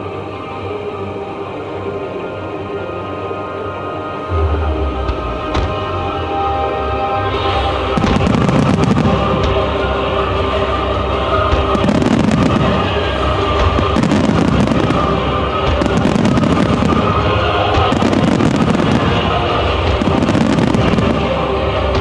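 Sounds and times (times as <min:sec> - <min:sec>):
music: 0:00.0 - 0:22.0
fireworks crackling bursts: 0:07.4 - 0:10.5, 0:11.4 - 0:22.0.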